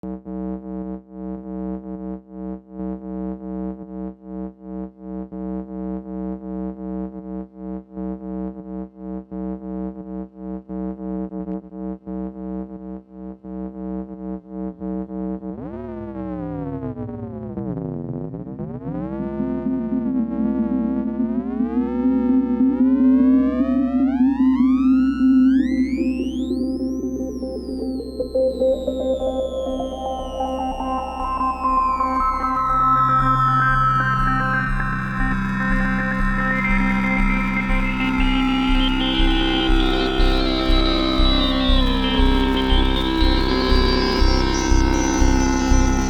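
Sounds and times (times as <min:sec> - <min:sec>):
analogue synthesizer note: 0:15.5 - 0:46.0.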